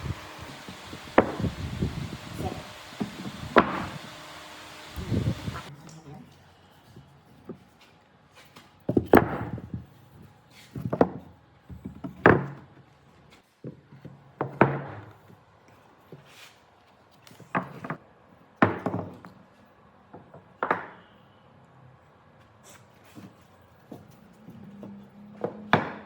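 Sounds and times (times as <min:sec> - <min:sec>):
heavy blows striking wood: 0:00.0 - 0:05.7.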